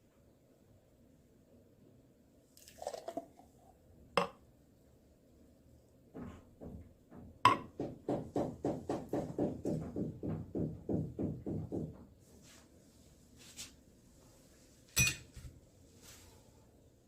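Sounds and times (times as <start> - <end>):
dishes clattering: 15.0 - 15.4
utensils knocking on dishes: 15.0 - 15.4.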